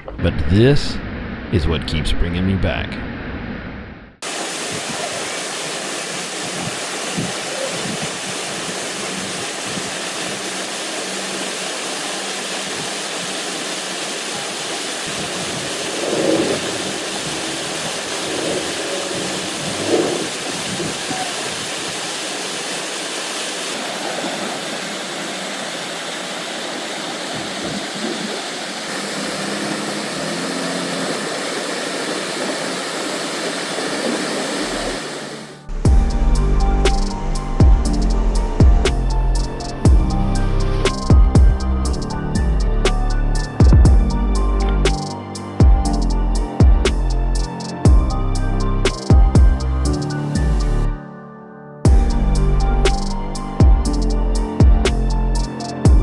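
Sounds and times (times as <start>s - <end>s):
waterfall pouring: 4.2s - 42.4s.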